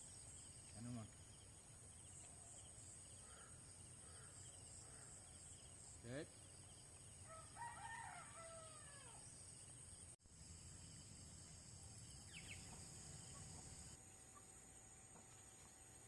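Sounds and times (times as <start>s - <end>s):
bird chirp: 0.0s - 7.6s, 10.7s - 14.5s
insects buzzing: 0.0s - 16.0s
rooster crowing: 7.2s - 9.2s.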